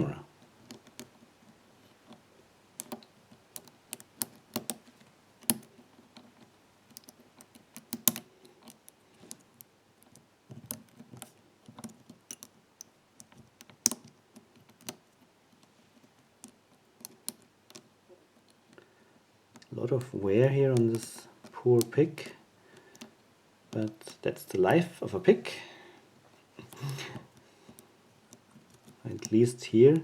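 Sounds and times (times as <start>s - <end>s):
lock pick clicking in padlock: 2.8s - 4.8s, 5.4s - 9.4s, 10.0s - 15.1s.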